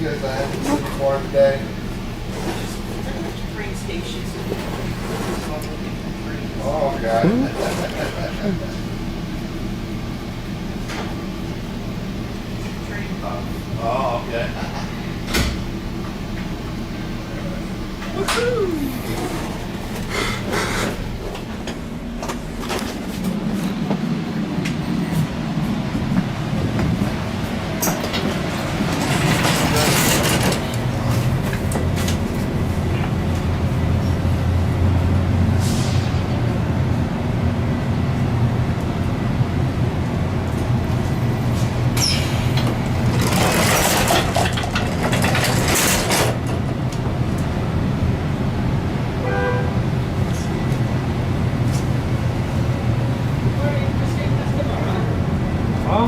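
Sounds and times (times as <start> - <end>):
train rumbling: 0.0 - 56.0
clicks from train wheels: 27.8 - 33.5, 40.0 - 47.5.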